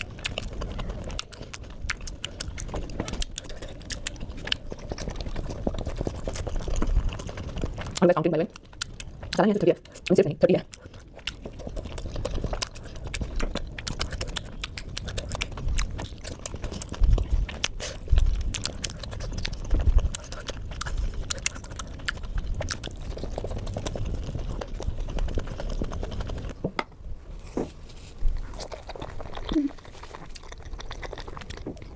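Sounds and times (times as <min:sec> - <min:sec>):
chewing mouth clicks and smacks: 0:00.0 - 0:26.6, 0:28.3 - 0:31.9.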